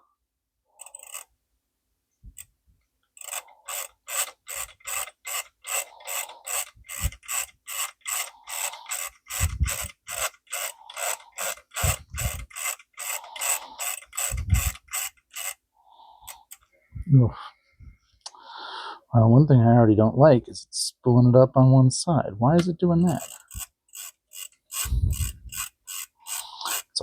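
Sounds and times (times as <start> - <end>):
ribbon spool ratchet clicking: 0.8 - 1.3, 3.1 - 15.6, 16.2 - 16.7, 23.1 - 27.0.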